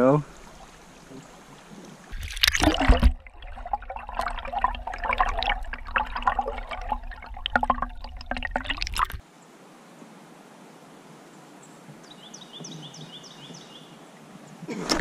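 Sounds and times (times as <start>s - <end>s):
water splashing and gurgling: 0.0s - 9.2s, 14.7s - 15.0s.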